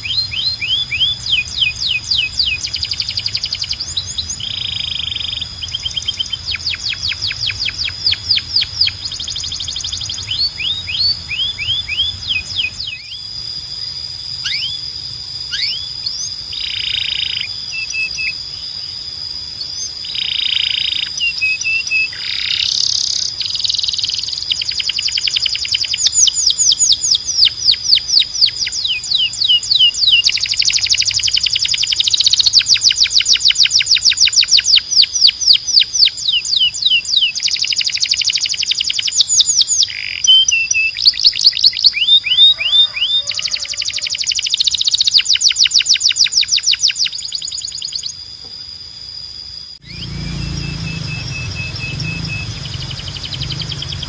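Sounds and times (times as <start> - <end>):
canary singing trills: 0.0 - 48.5, 49.6 - 54.0
steady high-pitched tone: 47.8 - 54.0.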